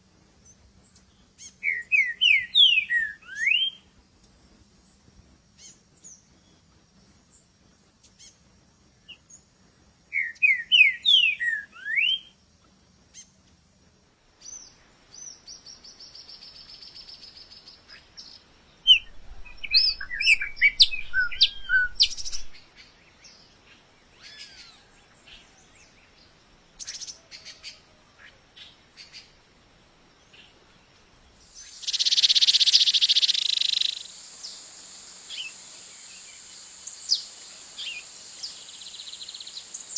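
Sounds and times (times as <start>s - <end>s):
rapid bird trill: 18.9s - 22.7s, 31.5s - 34.2s
birds chirping and singing: 18.9s - 27.8s.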